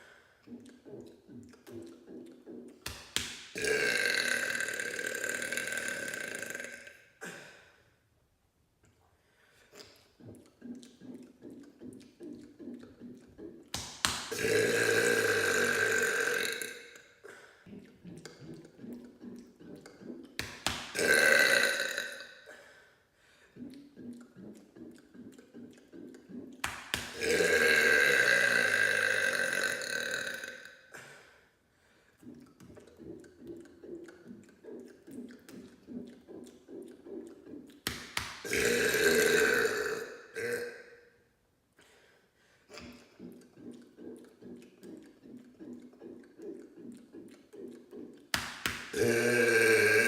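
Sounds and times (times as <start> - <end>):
man's long loud burp: 3.6 - 7.5, 14.3 - 17.1, 20.9 - 22.5, 27.1 - 30.9, 38.4 - 41.1, 48.9 - 50.0.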